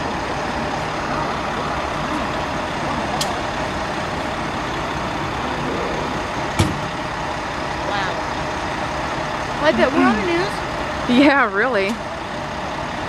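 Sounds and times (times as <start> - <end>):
heavy vehicles idling: 0.0 - 13.0.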